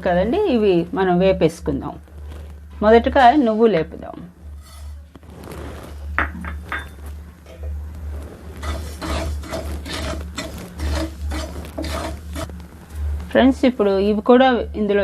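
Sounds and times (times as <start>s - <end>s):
low hum: 0.0s - 15.0s
spatula scraping pan: 4.5s - 6.1s, 8.1s - 12.6s.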